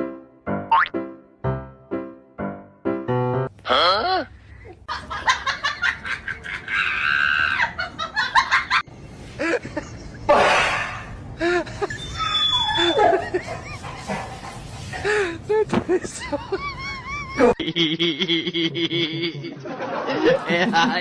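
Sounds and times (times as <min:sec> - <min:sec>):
people laughing: 0:04.9 - 0:10.3, 0:12.8 - 0:14.4, 0:15.8 - 0:21.0.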